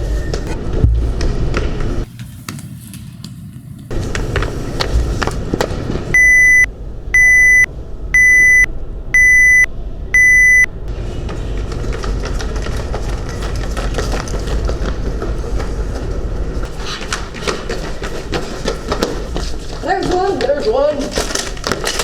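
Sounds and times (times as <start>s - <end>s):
smoke detector beeping: 6.1s - 10.7s.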